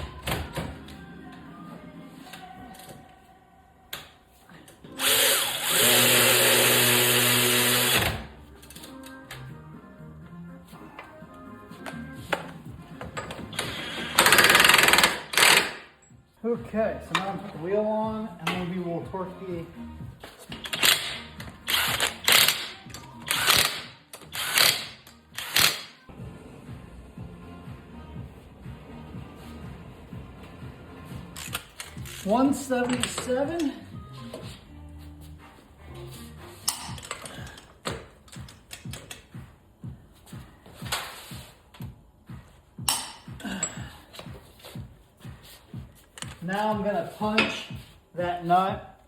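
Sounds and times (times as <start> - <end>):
ratchet wrench ratcheting: 5.0 - 8.1, 13.5 - 15.8, 20.6 - 25.9
cordless drill running: 5.0 - 8.2.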